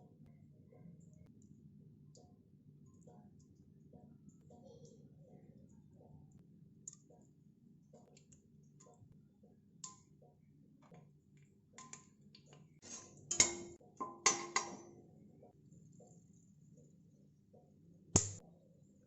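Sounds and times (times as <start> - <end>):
metal cookware clinking: 12.8 - 15.0.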